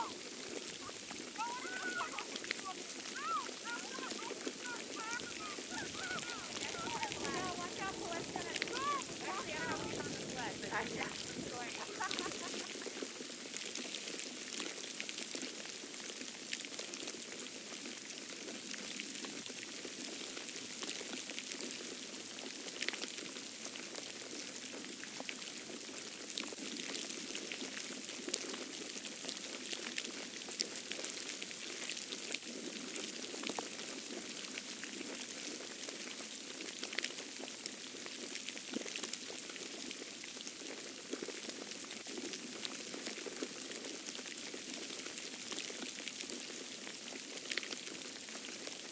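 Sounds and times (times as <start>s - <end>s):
snow pattering: 0.0s - 13.9s.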